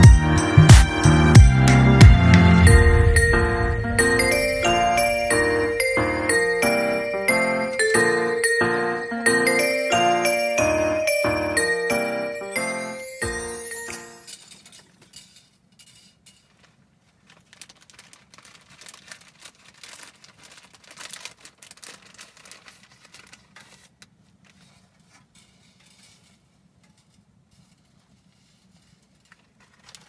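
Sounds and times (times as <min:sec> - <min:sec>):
faint crackling and rustling: 0:14.3 - 0:30.0.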